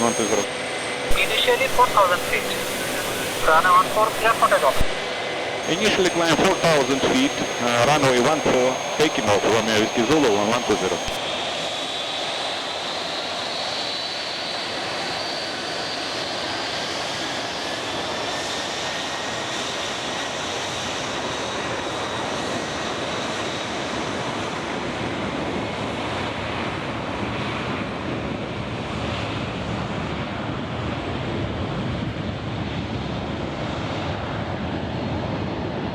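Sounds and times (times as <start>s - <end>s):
jet engine roar: 0.0s - 0.5s, 1.1s - 11.2s
high fan whine: 0.0s - 11.3s.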